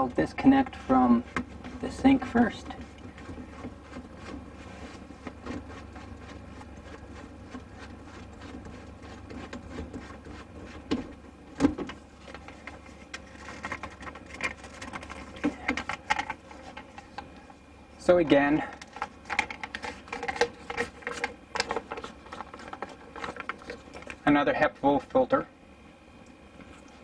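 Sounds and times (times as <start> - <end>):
plastic pipe clicks and rattles: 18.8 - 24.2.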